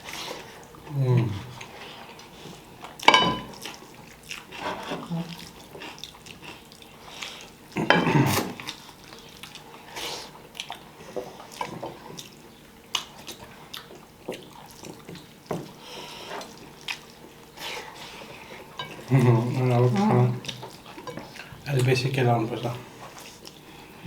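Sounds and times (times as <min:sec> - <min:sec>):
dishes clattering: 0:03.0 - 0:03.6, 0:07.9 - 0:08.3, 0:18.8 - 0:20.2, 0:21.0 - 0:21.4
dishes and utensils clinking: 0:03.0 - 0:03.7, 0:07.9 - 0:08.2, 0:18.7 - 0:21.5.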